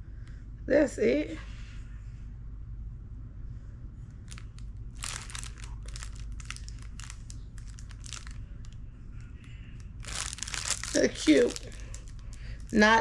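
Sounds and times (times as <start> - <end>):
plastic packaging crinkling: 4.2 - 8.8, 9.8 - 13.0.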